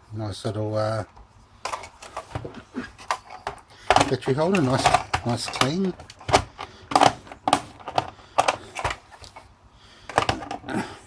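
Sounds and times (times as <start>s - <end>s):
plastic clicks and knocks: 1.1s - 9.4s, 10.1s - 10.6s.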